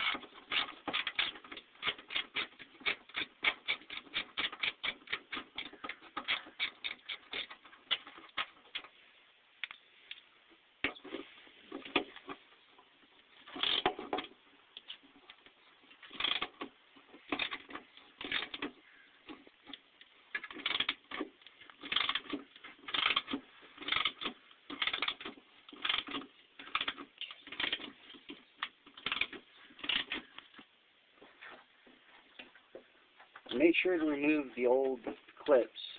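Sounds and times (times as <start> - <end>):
ratchet wrench clicking: 16.1 - 16.5, 20.3 - 21.2, 21.8 - 27.8, 29.0 - 30.2.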